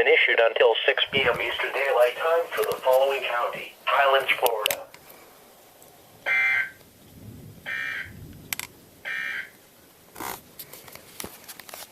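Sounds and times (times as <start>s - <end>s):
static clicks: 0.5s - 5.2s, 8.3s - 8.8s.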